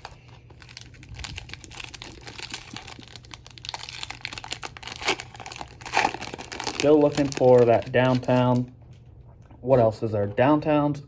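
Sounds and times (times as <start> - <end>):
foil packaging crinkling and clicking: 0.0 - 8.7.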